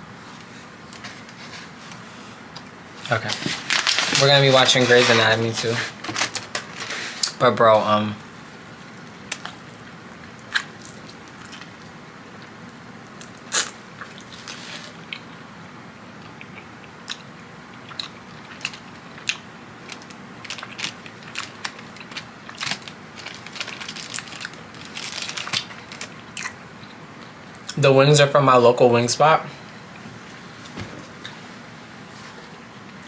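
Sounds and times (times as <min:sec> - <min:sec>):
chewing: 0:08.9 - 0:12.5, 0:16.2 - 0:27.8.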